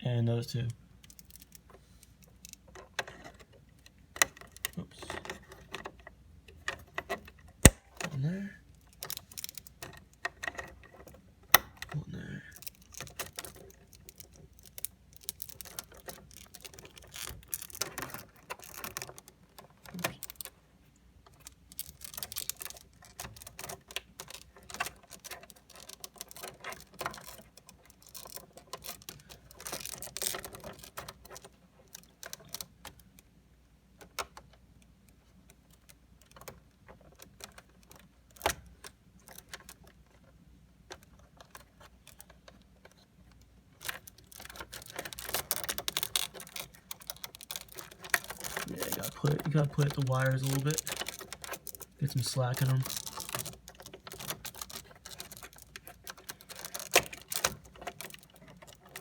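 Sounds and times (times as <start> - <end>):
cable plugs clicking and rattling: 43.8 - 59.0.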